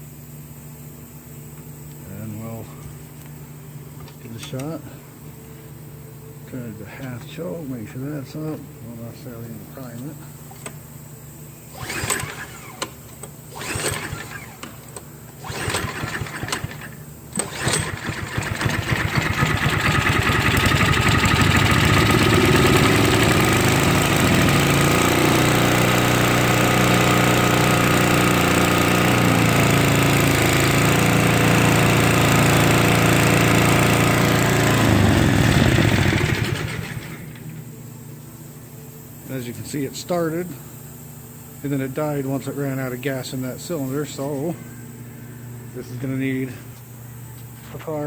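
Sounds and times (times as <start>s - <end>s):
small engine running: 11.7s - 14.8s, 15.4s - 37.6s
recoil starter pulls: 11.7s - 37.7s.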